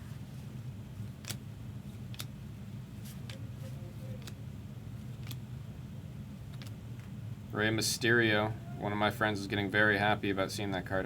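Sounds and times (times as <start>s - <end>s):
low steady hum: 0.0s - 11.0s
cards flipping clicks: 1.1s - 1.4s, 5.2s - 5.4s, 6.5s - 7.1s.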